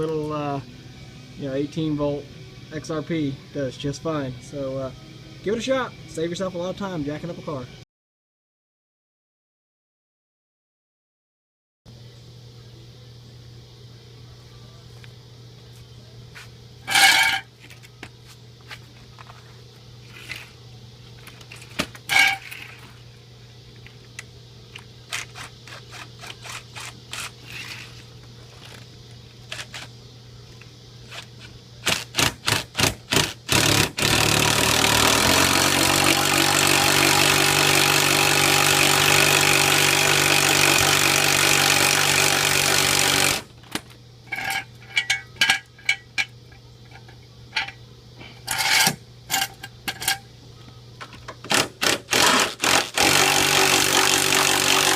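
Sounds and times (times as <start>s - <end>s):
impact wrench running: 25.1s - 28.0s, 31.1s - 43.5s, 51.5s - 54.9s.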